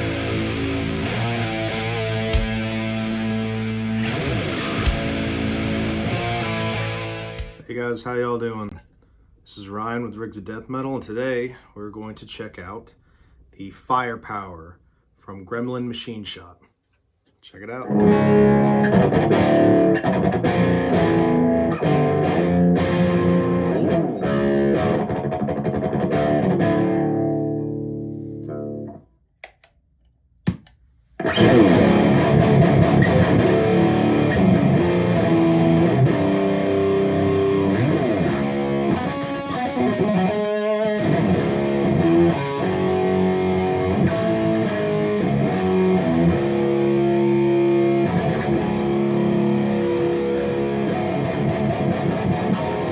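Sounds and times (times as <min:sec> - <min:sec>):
distorted electric guitar chords: 0:00.0 - 0:07.6, 0:17.8 - 0:29.0, 0:31.2 - 0:52.9.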